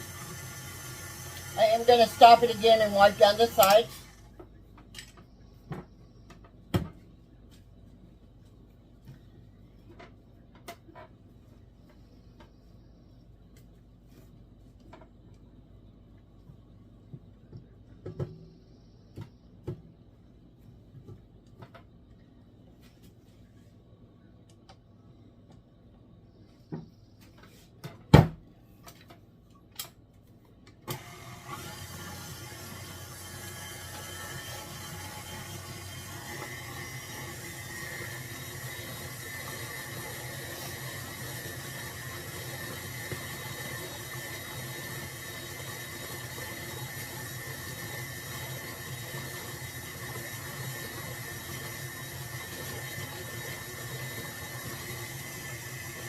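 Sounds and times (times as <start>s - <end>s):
electric mixer running: 0.0s - 4.4s, 30.9s - 56.0s.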